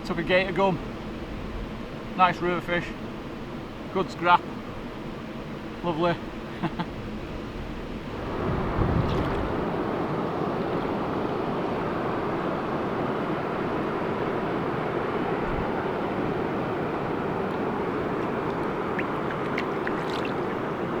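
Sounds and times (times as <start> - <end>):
rushing water: 8.1 - 12.2, 13.8 - 21.0.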